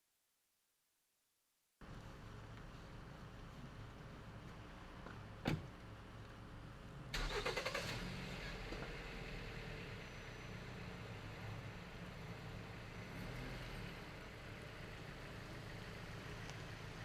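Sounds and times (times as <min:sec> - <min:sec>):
sharp thump: 0:05.5 - 0:05.7
car engine cranking and starting: 0:07.1 - 0:09.5.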